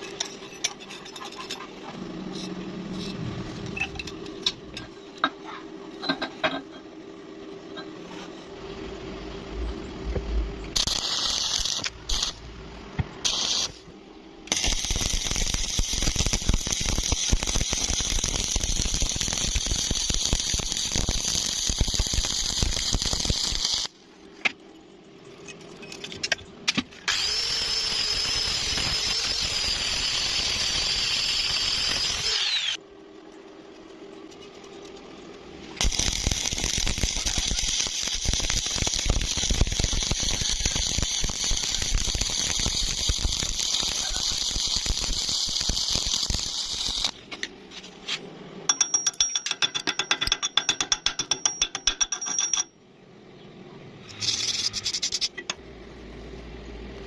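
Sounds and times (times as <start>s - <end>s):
thin high whine: 7.8s - 17.6s
welding arc crackling and sizzling: 9.2s - 24.0s, 27.0s - 32.8s, 34.4s - 48.3s, 54.0s - 55.4s.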